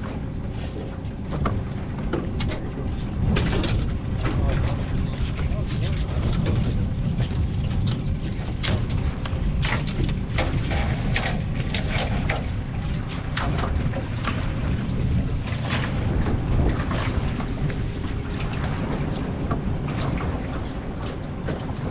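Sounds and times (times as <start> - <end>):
boat engine rumble: 0.0 - 21.9
wind noise on microphone: 0.0 - 21.9.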